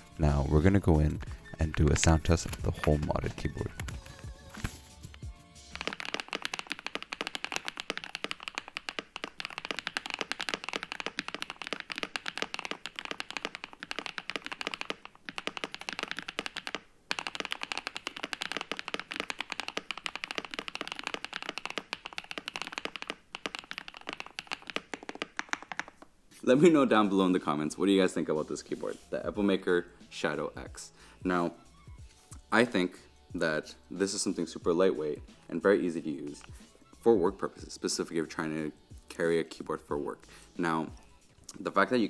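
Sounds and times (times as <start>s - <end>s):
mechanical keyboard typing: 0.0s - 26.1s.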